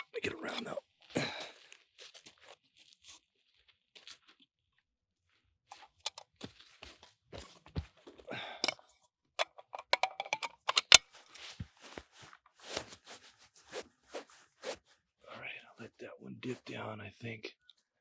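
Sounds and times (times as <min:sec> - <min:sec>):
rifle handling clicks and knocks: 0:00.0 - 0:00.8, 0:09.4 - 0:11.0.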